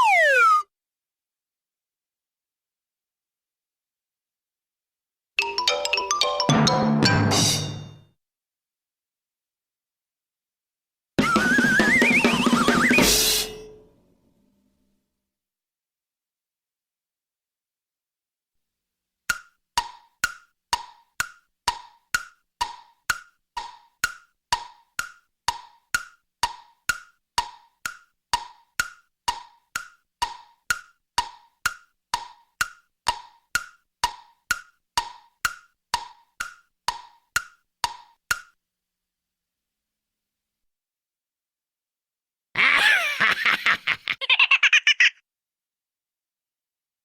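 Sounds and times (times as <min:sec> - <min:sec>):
hollow wooden tick-tock clicks: 0:19.3 - 0:38.6.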